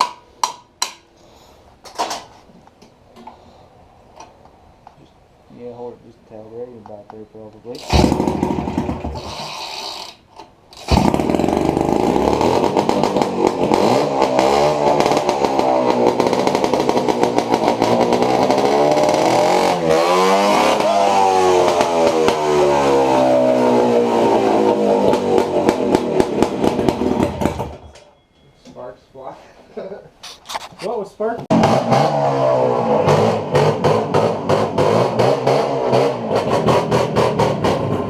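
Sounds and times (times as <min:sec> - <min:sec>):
two-stroke engine revving: 0:07.7 - 0:27.8, 0:31.5 - 0:38.0.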